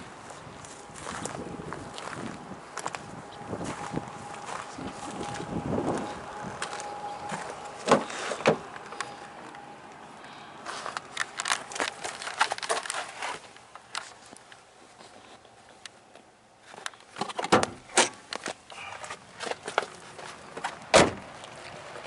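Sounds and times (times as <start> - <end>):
rustling handling noise: 10.6 - 16.0.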